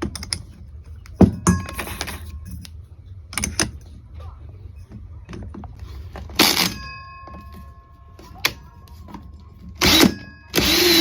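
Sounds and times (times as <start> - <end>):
power drill motor whirring: 9.8 - 11.0.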